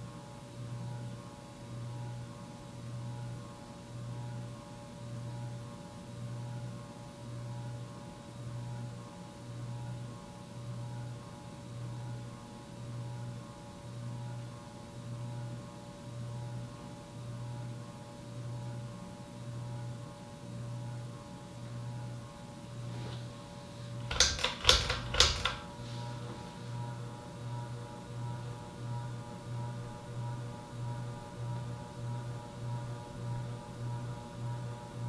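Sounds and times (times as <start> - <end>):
ceiling fan motor hum: 17.6 - 35.0
sharp clicks: 24.0 - 25.6.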